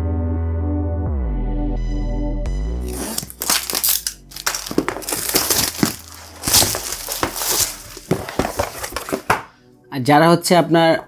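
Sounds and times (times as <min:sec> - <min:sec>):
crinkling and rustling handling: 0:02.9 - 0:09.5.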